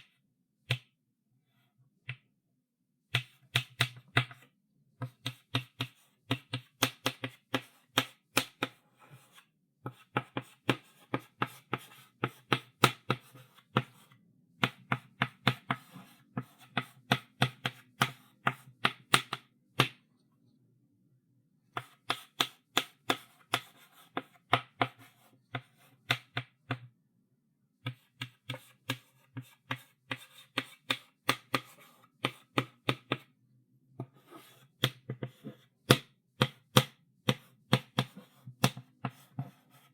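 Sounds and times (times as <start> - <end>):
chalk tapping on blackboard: 5.0 - 20.0, 21.7 - 26.8, 27.8 - 33.3, 34.0 - 39.9.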